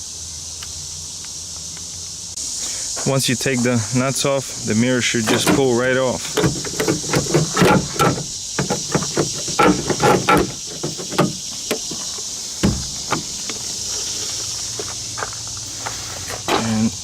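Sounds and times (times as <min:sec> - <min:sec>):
steady hiss: 0:00.0 - 0:17.0
scattered knocks: 0:06.3 - 0:12.0.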